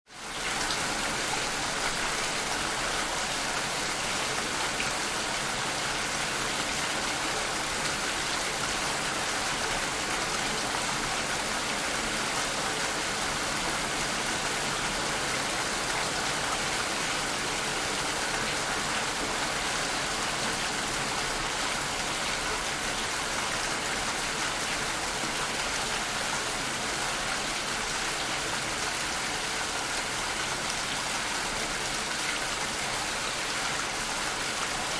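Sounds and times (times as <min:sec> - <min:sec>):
steady rain: 0:00.1 - 0:34.9.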